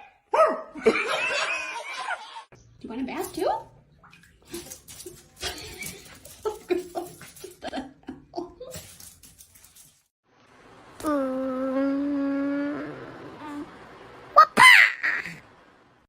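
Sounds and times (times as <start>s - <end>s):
people laughing: 0.8s - 2.5s.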